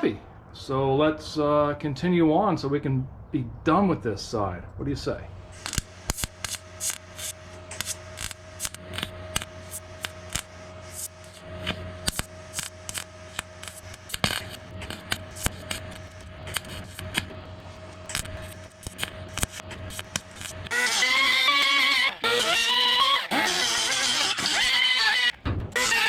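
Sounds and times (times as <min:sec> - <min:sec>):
steady hum: 0:04.6 - 0:26.0
welding crackles and clicks: 0:05.6 - 0:26.0.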